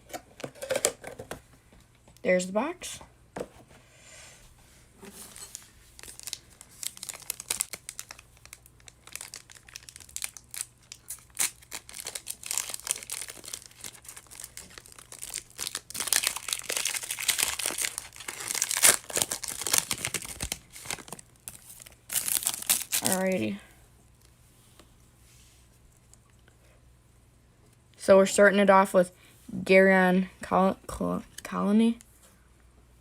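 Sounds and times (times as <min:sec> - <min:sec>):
card pack wrapper crinkling: 0:05.2 - 0:23.4.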